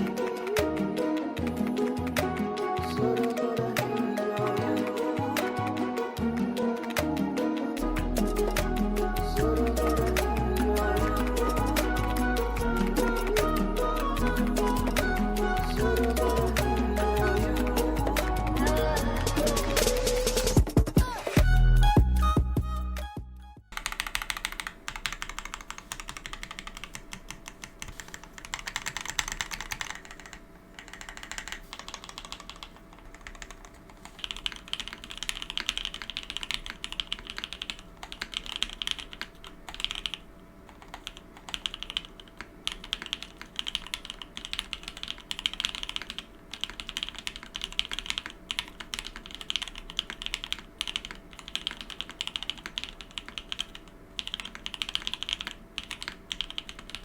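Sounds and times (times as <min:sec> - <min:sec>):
typing on mechanical keyboard: 0:23.7 - 0:57.0.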